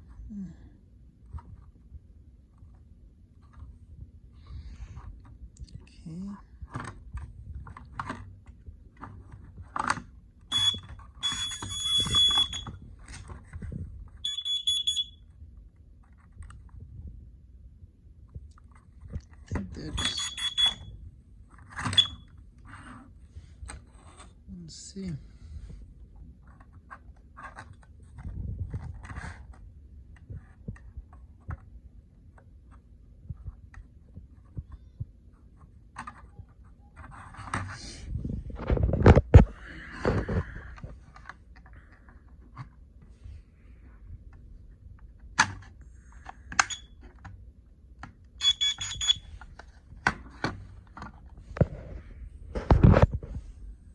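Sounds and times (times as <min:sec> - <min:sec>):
low steady rumble: 0:00.0 - 0:11.2, 0:50.7 - 0:53.9
alarm beeping: 0:10.5 - 0:12.7, 0:14.2 - 0:15.2, 0:19.9 - 0:20.9, 0:22.0 - 0:22.2, 0:48.4 - 0:49.3.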